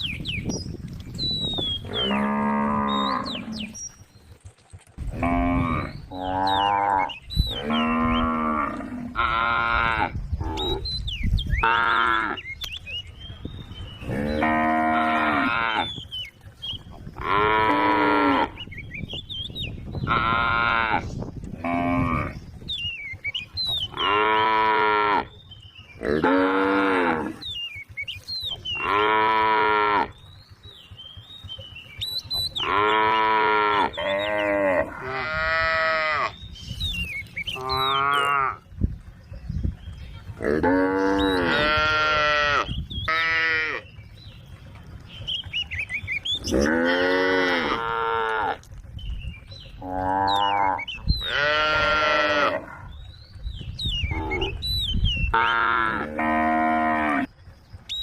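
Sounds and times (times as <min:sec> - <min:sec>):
cows mooing: 0:01.8 - 0:03.9, 0:05.0 - 0:10.9, 0:11.6 - 0:12.5, 0:14.0 - 0:16.1, 0:17.0 - 0:18.7, 0:20.0 - 0:22.4, 0:23.4 - 0:25.4, 0:26.0 - 0:27.6, 0:28.5 - 0:30.5, 0:32.3 - 0:36.5, 0:37.4 - 0:38.7, 0:40.3 - 0:44.6, 0:45.9 - 0:48.8, 0:49.7 - 0:53.1, 0:54.0 - 0:54.6, 0:55.3 - 0:57.3.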